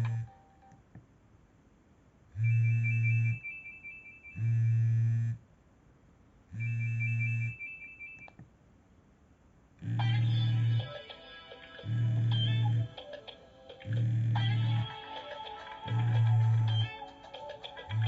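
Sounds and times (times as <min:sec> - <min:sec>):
phone alert buzz: 0:11.8 - 0:13.0, 0:13.9 - 0:15.0.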